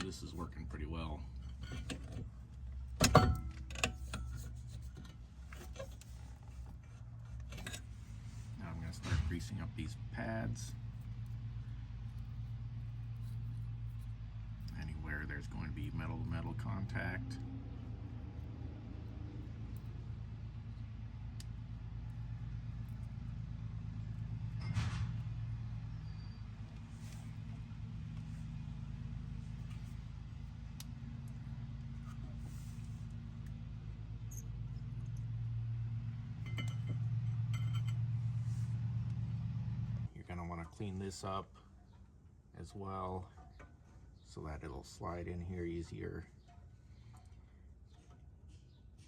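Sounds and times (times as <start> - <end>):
steady low hum: 0.0 - 49.0
tools and brake parts clinking: 1.3 - 8.2, 24.5 - 25.2, 34.2 - 35.3, 36.3 - 38.5, 43.2 - 43.8.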